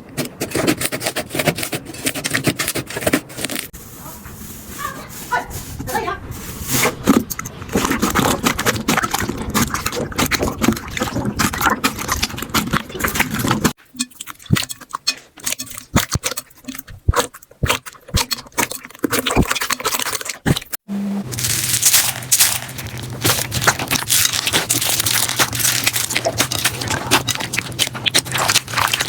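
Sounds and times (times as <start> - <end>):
slime squeezed by hand: 21.3 - 29.0.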